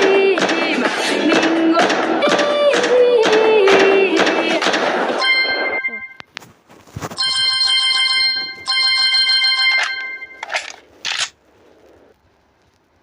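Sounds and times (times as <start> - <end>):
ringing electronic tones: 5.2 - 6.3, 7.2 - 10.6.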